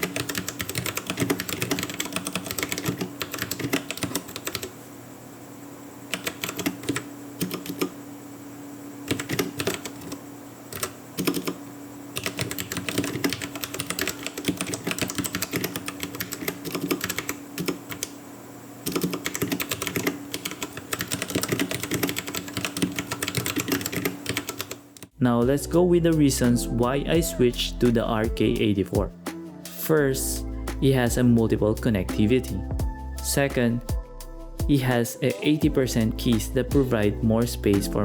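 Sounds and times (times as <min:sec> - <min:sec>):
mechanical keyboard typing: 0:00.0 - 0:04.7, 0:06.1 - 0:08.0, 0:09.1 - 0:11.6, 0:12.2 - 0:18.2, 0:18.9 - 0:25.1.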